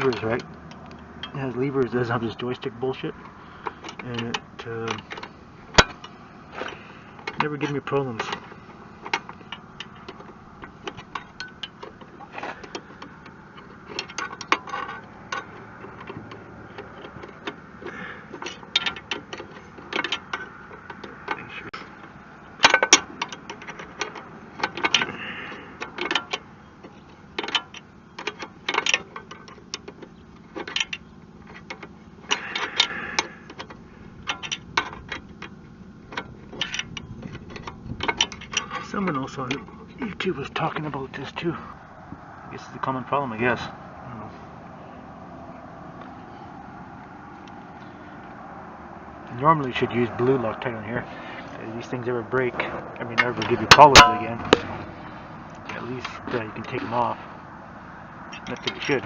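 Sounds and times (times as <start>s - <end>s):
wrench clinking on metal bolts: 0.0s - 41.4s, 51.9s - 54.6s, 58.3s - 59.0s
sharp metal knock: 53.5s - 54.8s.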